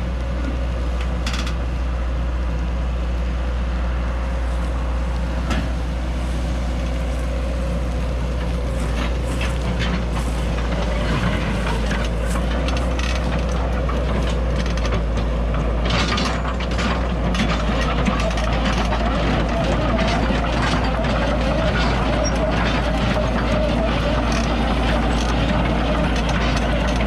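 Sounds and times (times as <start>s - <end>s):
heavy engine droning: 0.0s - 27.0s
cracks and knocks: 5.3s - 15.3s.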